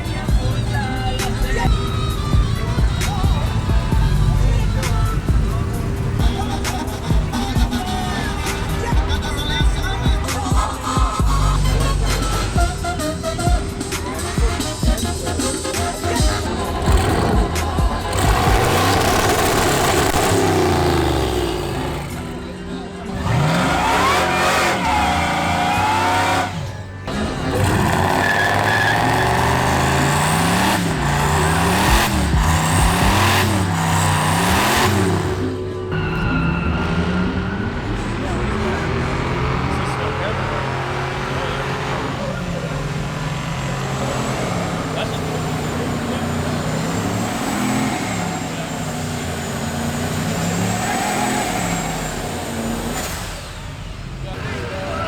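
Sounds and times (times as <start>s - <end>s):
truck engine revving hard: 0.0s - 55.0s
tyre squeal: 27.4s - 38.4s.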